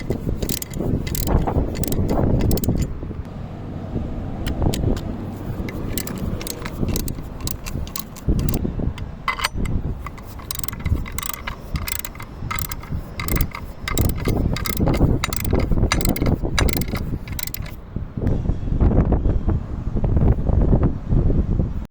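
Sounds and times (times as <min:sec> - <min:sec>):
mechanical clicking and clattering: 0:00.0 - 0:03.3, 0:04.5 - 0:17.8.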